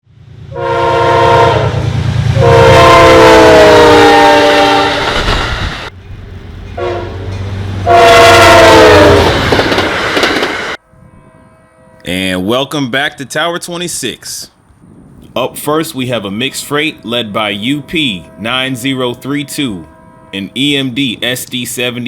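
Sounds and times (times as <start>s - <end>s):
train air horn blasts: 0.5s - 5.5s, 6.8s - 9.5s, 10.8s - 12.5s, 16.8s - 21.2s.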